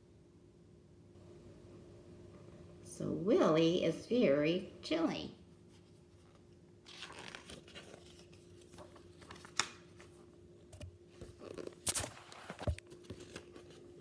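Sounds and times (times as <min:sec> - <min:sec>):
book pages turning: 0:05.7 - 0:14.0.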